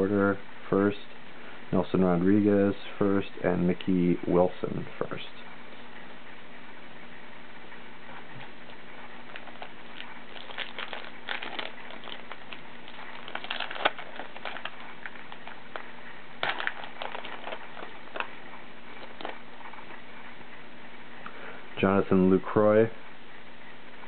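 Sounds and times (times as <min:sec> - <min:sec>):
wrapper crinkling and tearing: 0:09.3 - 0:15.8, 0:16.4 - 0:18.3, 0:19.0 - 0:19.4.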